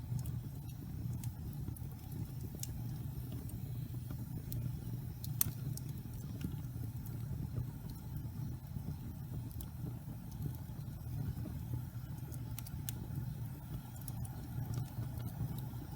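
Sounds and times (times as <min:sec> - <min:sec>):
fire crackling and popping: 0:00.0 - 0:15.9
low rumble of flames: 0:00.0 - 0:15.9.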